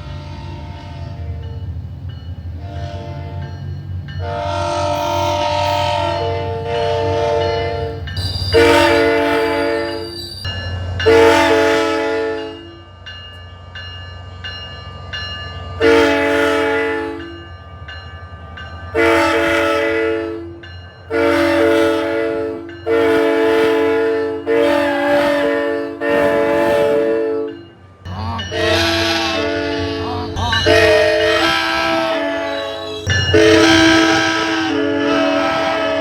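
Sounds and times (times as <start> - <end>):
locomotive air horn blasts: 0.0 - 1.4, 2.6 - 3.4, 4.2 - 10.2, 11.1 - 12.8, 15.8 - 17.3, 19.0 - 27.6, 28.4 - 36.0
low locomotive rumble: 0.0 - 36.0.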